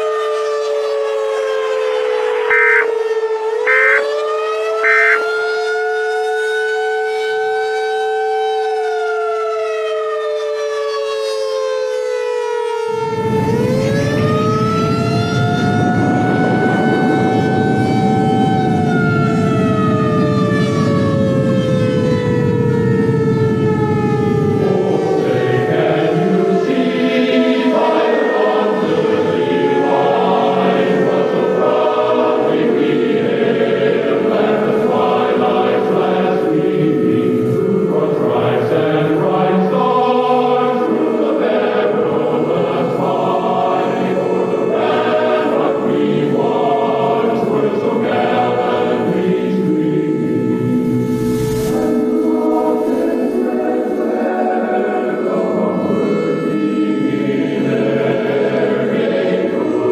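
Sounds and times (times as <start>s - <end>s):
falling siren tone: 0.0s - 59.9s
choir singing: 2.4s - 2.9s, 3.6s - 4.1s, 4.8s - 5.3s, 24.5s - 59.9s
steady held tone: 2.5s - 2.9s, 3.7s - 4.1s, 4.8s - 5.4s, 48.5s - 54.1s.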